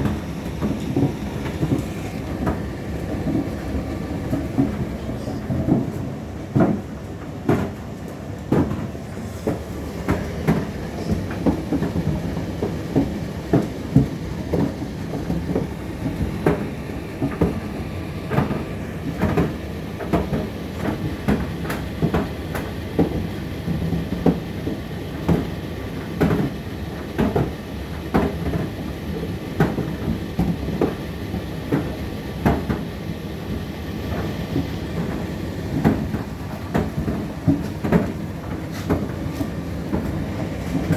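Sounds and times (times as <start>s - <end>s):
laundry knocking in drum: 0.0s - 7.8s, 8.5s - 25.5s, 34.1s - 40.9s
tumble dryer humming: 0.0s - 21.6s.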